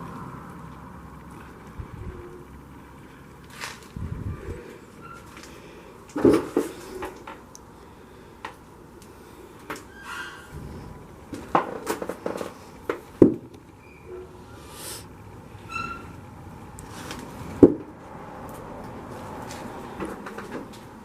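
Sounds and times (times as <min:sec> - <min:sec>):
creaking squeaks: 0:04.4 - 0:05.6, 0:09.7 - 0:11.1, 0:13.7 - 0:14.7, 0:15.6 - 0:16.3.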